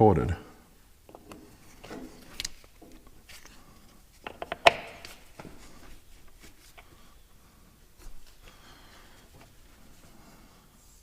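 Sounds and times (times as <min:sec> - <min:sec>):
light clicks and knocks: 0:01.1 - 0:03.6.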